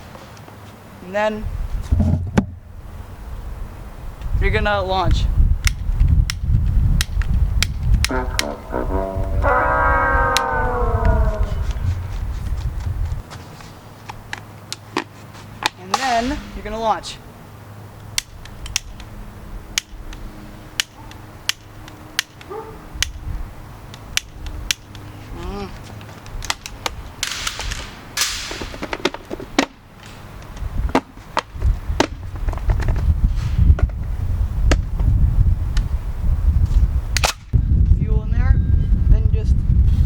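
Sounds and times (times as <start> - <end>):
low rumble: 7.4 - 13.2.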